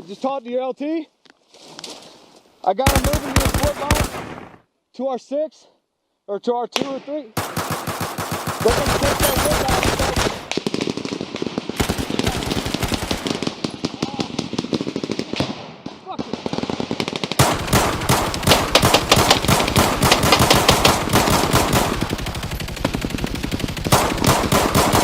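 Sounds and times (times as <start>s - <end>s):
automatic gunfire: 2.8s - 4.6s, 7.4s - 15.5s, 16.2s - 25.0s.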